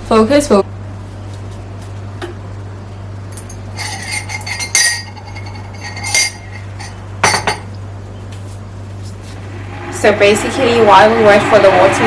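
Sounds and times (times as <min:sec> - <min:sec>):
crockery and cutlery clinking: 0:03.3 - 0:07.7.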